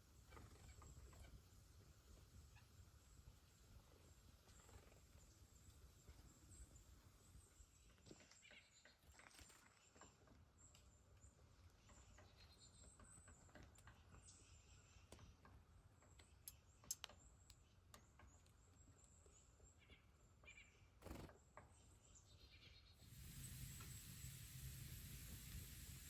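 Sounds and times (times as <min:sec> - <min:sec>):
small birds chirping: 0:00.1 - 0:26.0
light clicks and taps: 0:15.1 - 0:18.6.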